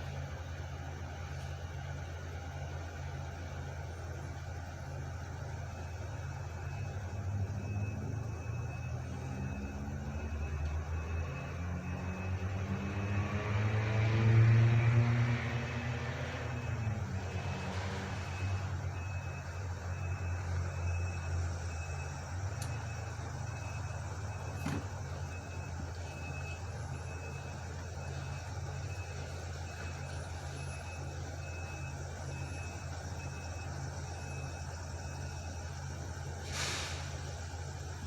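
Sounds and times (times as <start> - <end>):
reversing alarm beeps: 0.0 - 38.0
truck engine running: 0.0 - 38.0
short hiss: 36.4 - 37.4.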